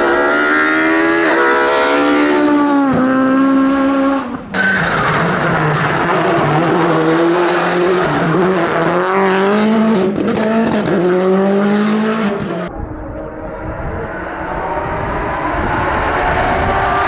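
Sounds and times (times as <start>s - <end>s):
race car engine revving: 0.0s - 17.0s
low engine rumble: 12.7s - 17.0s.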